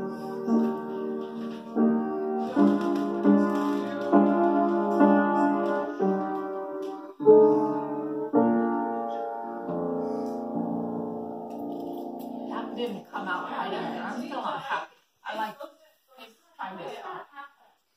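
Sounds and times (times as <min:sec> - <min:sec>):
piano chords: 0:00.0 - 0:14.2.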